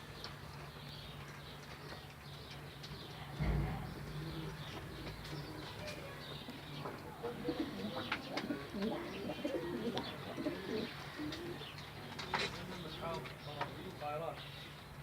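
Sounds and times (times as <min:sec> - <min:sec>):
pigeons cooing: 0:03.0 - 0:14.0.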